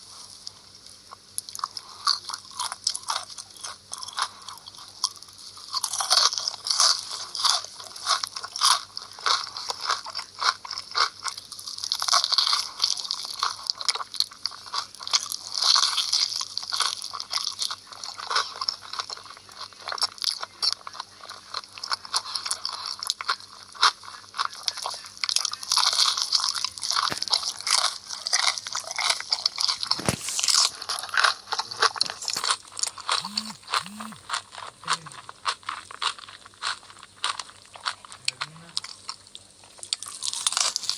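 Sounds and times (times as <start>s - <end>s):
crunchy food being chewed: 0.0s - 40.9s.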